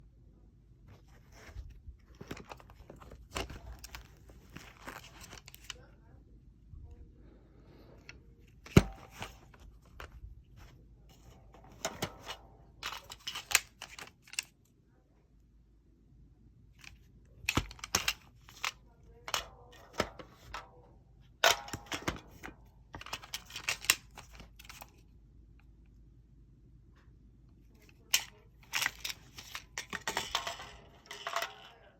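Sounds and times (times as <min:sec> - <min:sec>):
magazines clicking and rattling: 0:00.9 - 0:05.9, 0:07.8 - 0:14.7, 0:16.7 - 0:25.7, 0:27.6 - 0:31.9.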